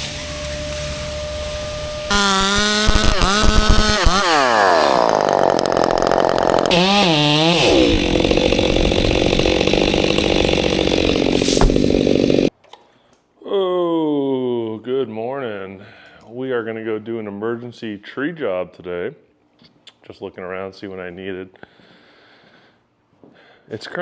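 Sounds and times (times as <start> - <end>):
low hum: 0.0 - 4.2
chainsaw revving: 2.1 - 12.5.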